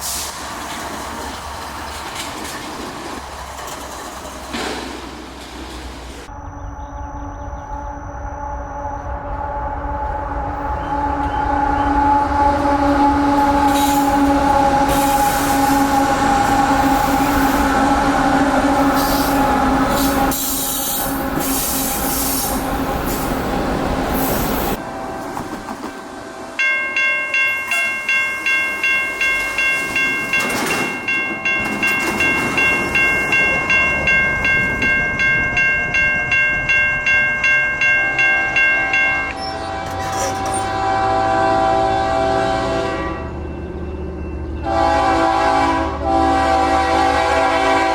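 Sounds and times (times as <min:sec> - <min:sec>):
freight train running by: 0:00.0 - 0:47.9
locomotive horn chord: 0:06.3 - 0:23.0, 0:38.8 - 0:43.6, 0:44.5 - 0:47.9
crossing warning bell ringing: 0:26.5 - 0:47.9.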